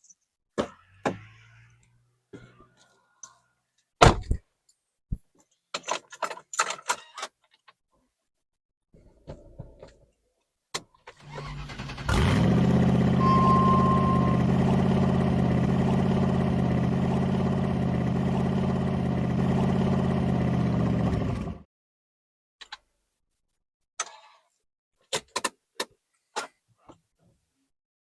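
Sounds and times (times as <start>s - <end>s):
car engine cranking and idling: 11.1s - 21.6s
short steady beep: 13.2s - 14.5s.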